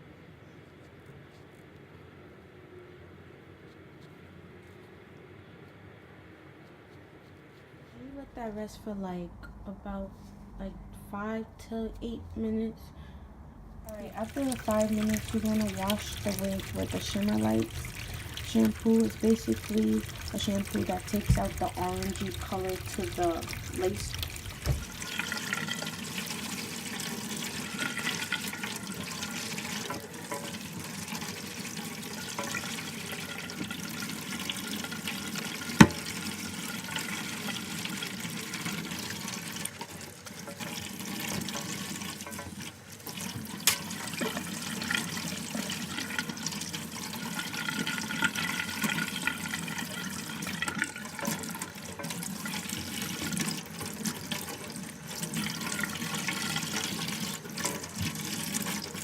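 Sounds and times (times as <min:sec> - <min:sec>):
tap water running into sink: 0:13.9 - 0:59.0.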